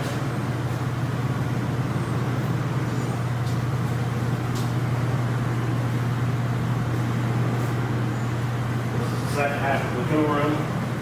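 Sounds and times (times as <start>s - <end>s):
low mechanical hum with rushing: 0.0s - 11.0s.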